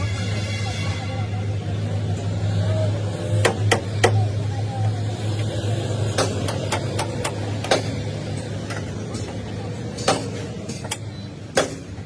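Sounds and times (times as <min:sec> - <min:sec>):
sharp knocks: 0:10.0 - 0:12.0.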